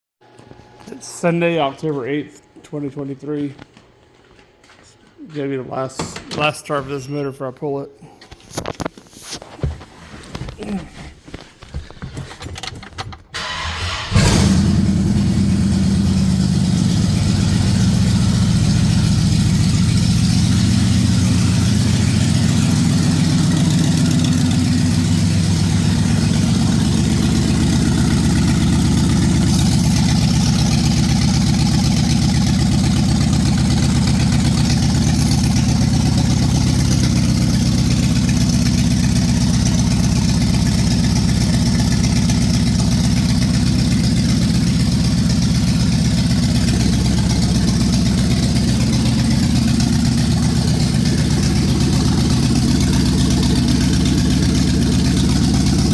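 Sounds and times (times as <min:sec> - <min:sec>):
car engine cranking and running: 0:12.2 - 0:55.9.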